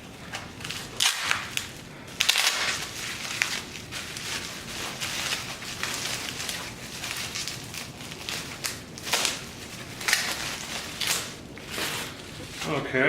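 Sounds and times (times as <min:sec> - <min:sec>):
packing wrapping crinkling and tearing: 0:00.0 - 0:12.9.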